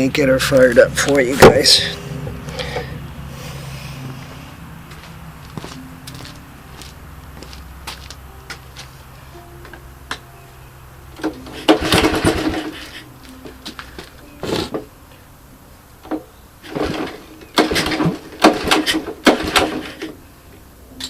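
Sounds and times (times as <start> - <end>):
recoil starter pulls: 11.2 - 13.0, 16.0 - 20.2.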